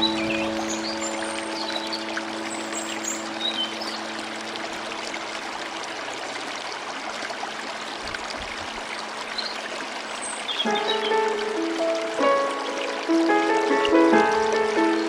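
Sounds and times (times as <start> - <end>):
held music notes: 0.0 - 5.1, 10.7 - 15.0
stream water flowing: 0.0 - 15.0.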